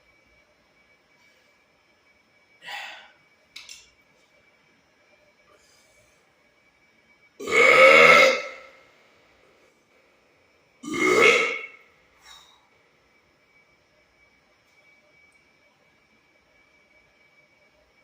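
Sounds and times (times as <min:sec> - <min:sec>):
man burping loudly: 0:07.4 - 0:08.7, 0:10.8 - 0:11.8.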